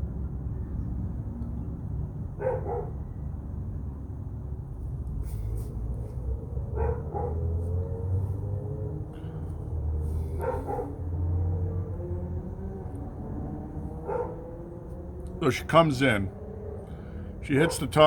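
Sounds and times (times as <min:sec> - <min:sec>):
dog barking: 0:02.4 - 0:03.0, 0:06.7 - 0:07.6, 0:10.4 - 0:11.0, 0:14.0 - 0:14.5
steady low rumble: 0:04.1 - 0:18.0.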